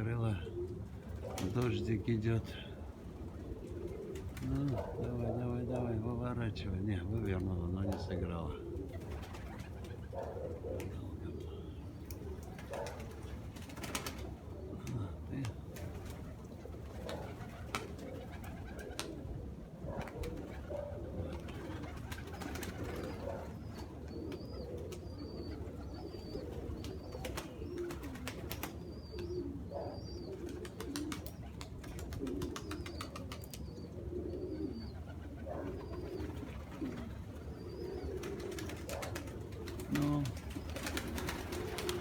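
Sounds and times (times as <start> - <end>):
pigeons cooing: 0.0 - 42.0.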